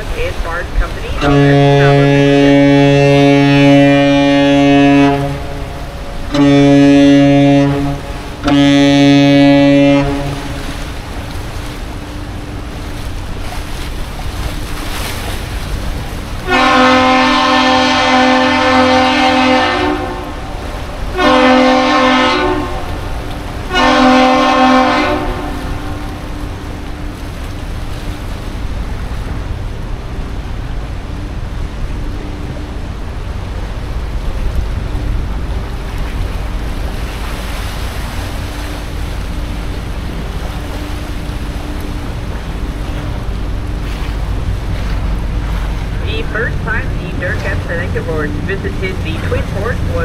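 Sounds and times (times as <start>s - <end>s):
ship horn blasts: 0.0s - 50.0s
higher-pitched horn blasts: 1.2s - 10.8s, 16.5s - 26.4s.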